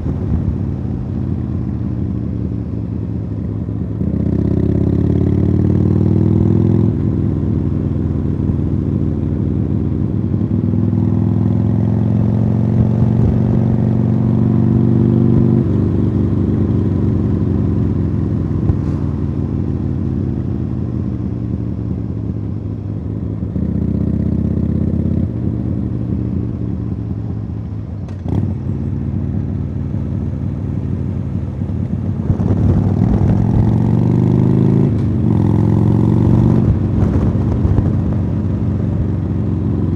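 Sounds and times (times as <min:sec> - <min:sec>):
motorcycle engine revving: 0:23.4 - 0:39.9.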